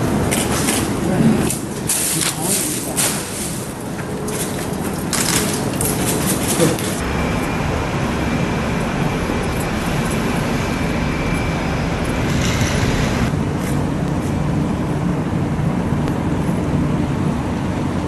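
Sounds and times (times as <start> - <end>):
engine running: 3.6 - 18.0.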